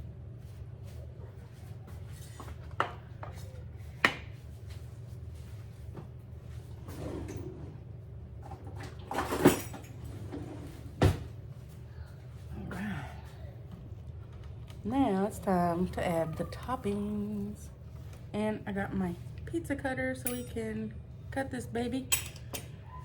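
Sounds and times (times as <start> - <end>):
steady low hum: 0.0 - 23.0
dishes and utensils clattering: 8.4 - 11.2, 20.2 - 20.8, 22.1 - 22.8.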